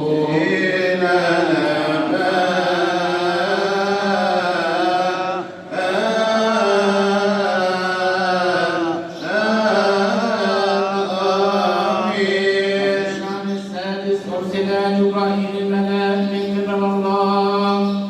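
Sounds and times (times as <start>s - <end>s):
solo liturgical chant: 0.0s - 18.0s.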